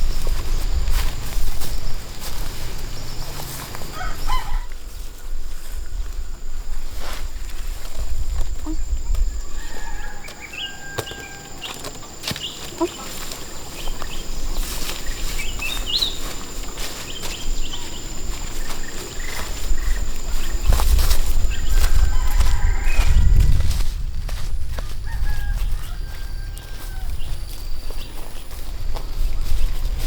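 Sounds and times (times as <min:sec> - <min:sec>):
chickens: 0:02.2 - 0:05.2, 0:08.4 - 0:23.8, 0:25.0 - 0:30.0
bird chirps and calls: 0:12.4 - 0:16.4.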